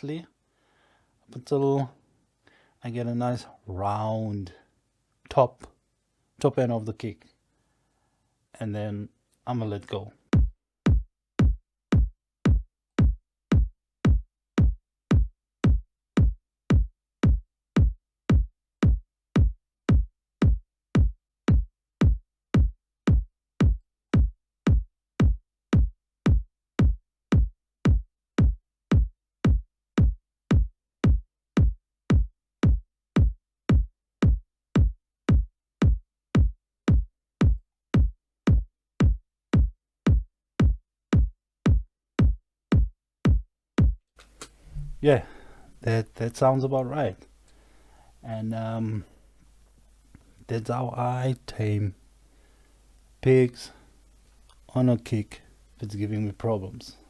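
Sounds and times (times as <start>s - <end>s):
kick drum thuds: 10.4s - 45.9s.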